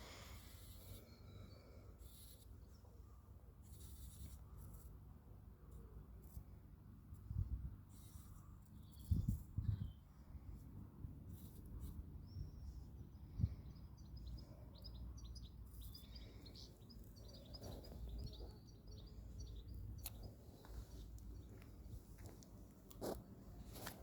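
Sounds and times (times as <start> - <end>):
small birds chirping: 7.9 - 10.1, 11.4 - 24.0.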